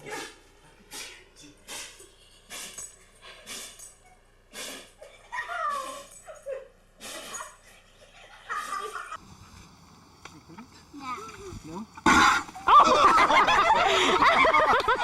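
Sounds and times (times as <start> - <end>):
dog sneezing: 0.1 - 5.0, 7.0 - 7.6.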